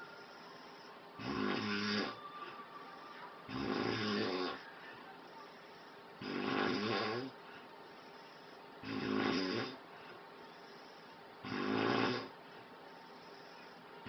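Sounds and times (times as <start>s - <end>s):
man snoring heavily: 0.0s - 2.2s, 3.4s - 4.7s, 5.4s - 7.4s, 8.0s - 9.8s, 10.5s - 12.4s.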